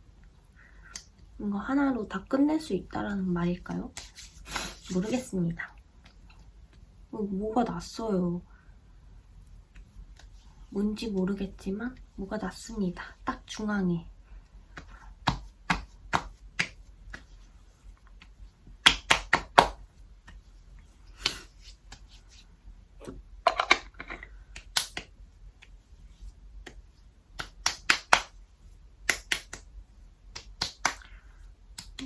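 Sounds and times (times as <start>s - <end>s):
hands patting skin: 3.7s - 5.3s, 9.6s - 11.4s, 14.7s - 22.5s, 24.5s - 29.7s, 30.3s - 32.0s.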